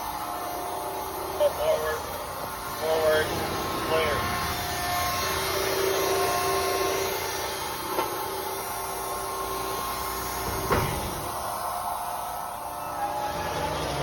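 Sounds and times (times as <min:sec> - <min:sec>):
baler machine hum: 0:00.0 - 0:14.0
machine whine: 0:00.0 - 0:14.0
sharp knocks: 0:10.4 - 0:11.2.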